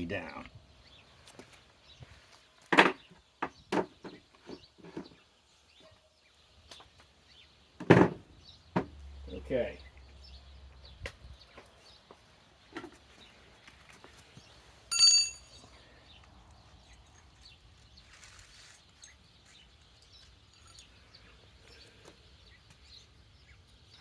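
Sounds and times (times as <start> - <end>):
outdoor background: 0.0 - 24.0
ringing metallic clink: 14.9 - 15.7.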